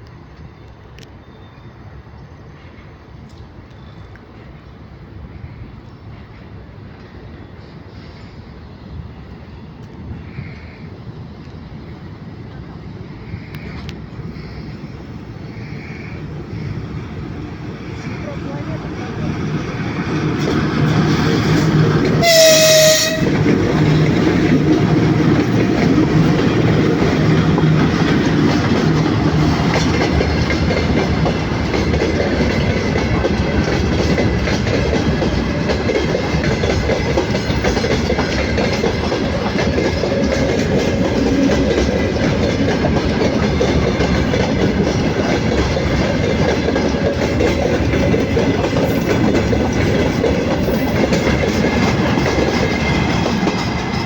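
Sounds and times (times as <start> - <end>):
freight train rumbling past: 0.0 - 54.0
train horn: 22.2 - 23.5.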